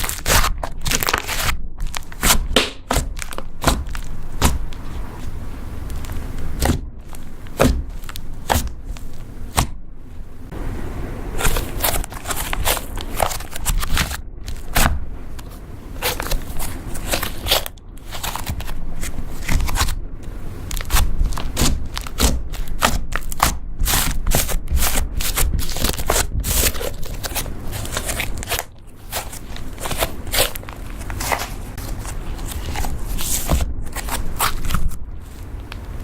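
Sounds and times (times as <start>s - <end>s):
slime clicking and crackling: 0.0s - 5.3s, 20.6s - 36.0s.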